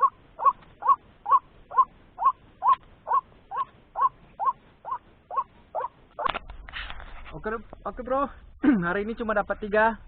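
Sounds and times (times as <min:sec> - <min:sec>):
waterhen calling: 0:00.0 - 0:06.3.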